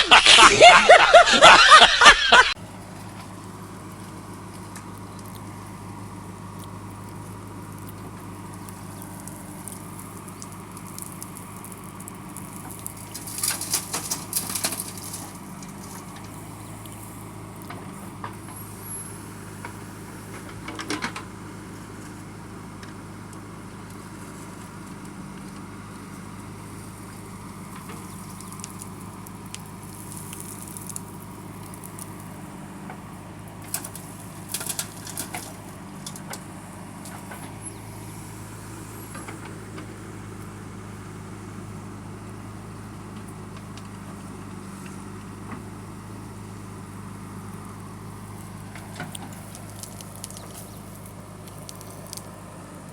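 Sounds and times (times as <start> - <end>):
diesel engine running: 0.0 - 52.9
short clatters: 12.6 - 18.8, 33.6 - 38.1.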